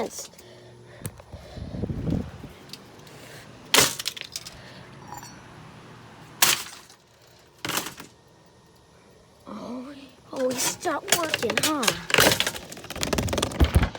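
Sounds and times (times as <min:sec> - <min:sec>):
fan motor hum: 0:00.0 - 0:13.9
plastic cracking from blows: 0:10.8 - 0:13.9.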